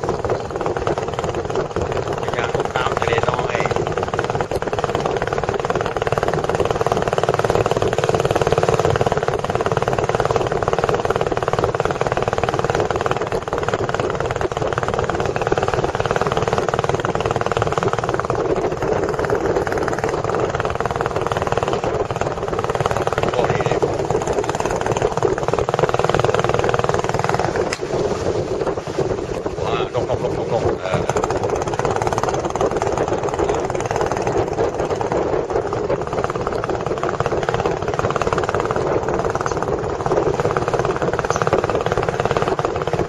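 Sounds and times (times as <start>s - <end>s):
boat engine chugging: 0.0s - 43.0s.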